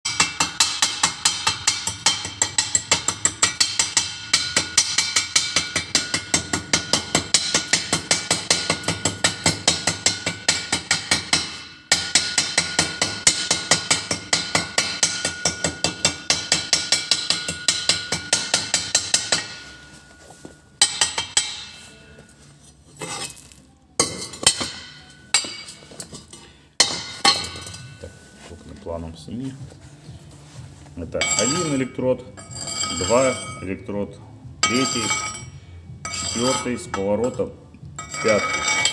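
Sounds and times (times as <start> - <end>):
hammer tapping on metal: 0.1 - 19.8.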